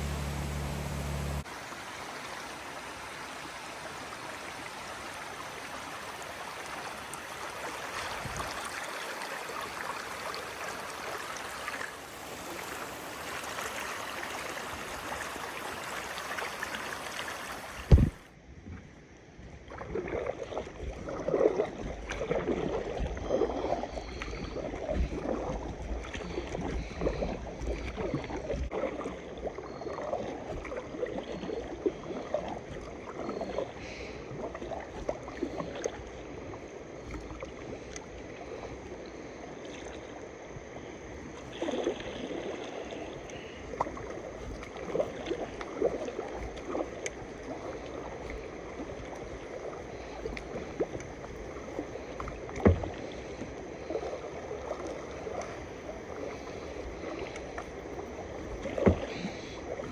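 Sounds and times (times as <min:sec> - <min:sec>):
low rumble: 0:00.0 - 0:01.5
river rushing and churning: 0:00.0 - 0:18.3.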